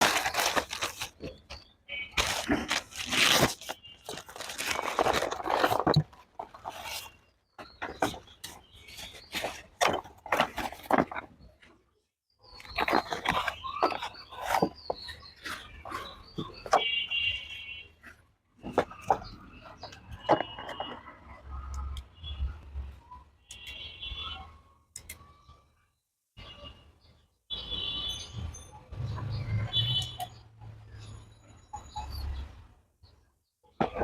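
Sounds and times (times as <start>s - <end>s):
packaging clicks and knocks: 0.0s - 11.5s, 12.6s - 17.0s, 18.6s - 21.0s
plastic and cardboard crinkling: 0.0s - 11.8s, 12.5s - 21.4s, 33.8s - 34.0s.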